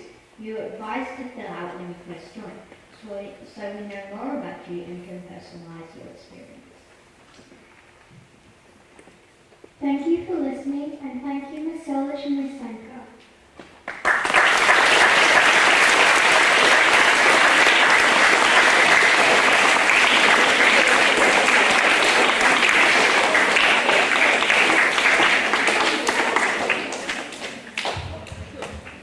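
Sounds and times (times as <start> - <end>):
audience clapping: 13.8 - 29.0.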